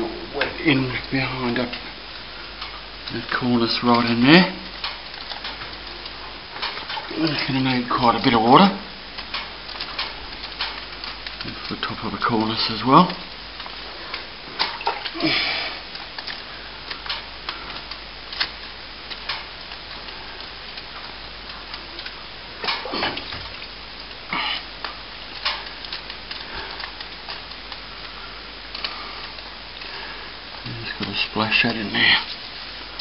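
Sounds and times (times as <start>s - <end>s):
water spattering and dripping: 0.0s - 33.0s
short water splashes: 2.6s - 19.6s.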